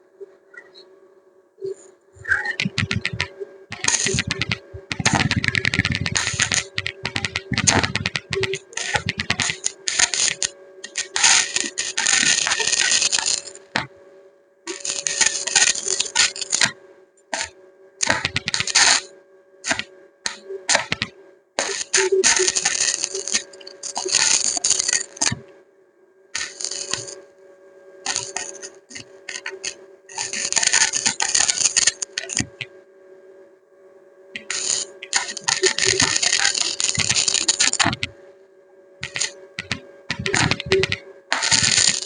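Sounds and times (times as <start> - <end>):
faint steady hum: 0.0 - 42.0
welding arc crackling: 2.2 - 13.9, 14.7 - 25.5, 26.4 - 27.2, 28.0 - 32.7, 34.4 - 38.2, 39.0 - 42.0.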